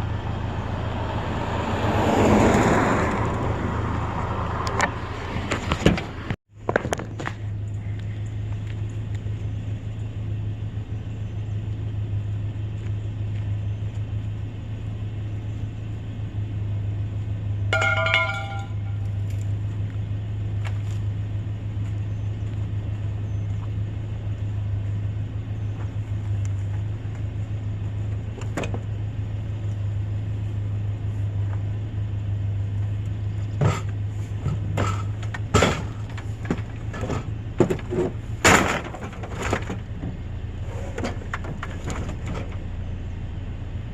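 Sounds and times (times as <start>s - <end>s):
vehicle engine droning: 0.0s - 43.9s
sharp knocks and clatter: 17.7s - 19.2s, 33.6s - 40.2s.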